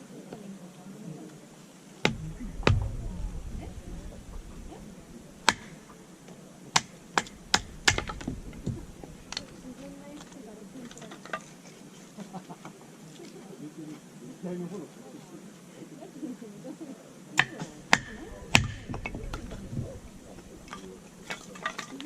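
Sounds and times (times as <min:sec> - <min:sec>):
sharp knocks and clicks: 0:02.1 - 0:05.9, 0:06.8 - 0:10.4, 0:17.4 - 0:21.8
dull thuds: 0:02.1 - 0:06.0, 0:06.8 - 0:10.6, 0:17.5 - 0:21.8.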